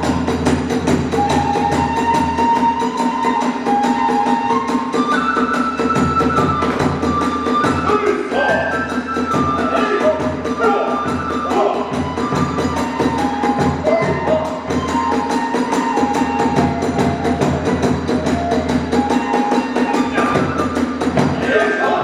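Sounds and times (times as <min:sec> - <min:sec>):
flute playing held notes: 0:00.0 - 0:22.0
drum beat: 0:05.8 - 0:22.0.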